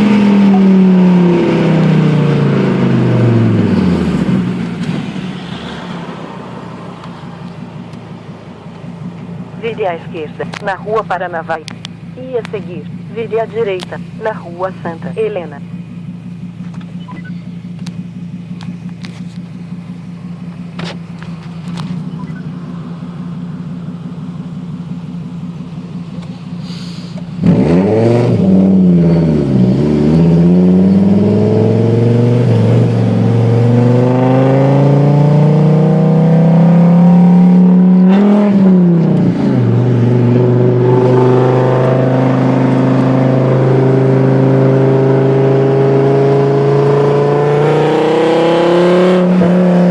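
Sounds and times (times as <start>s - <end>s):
car engine accelerating: 0.0s - 49.9s.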